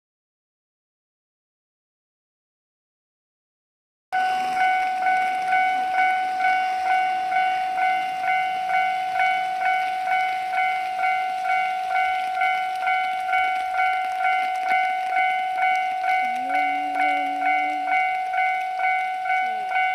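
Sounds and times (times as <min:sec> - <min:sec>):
level crossing bell alarm ringing: 0:04.2 - 0:19.9.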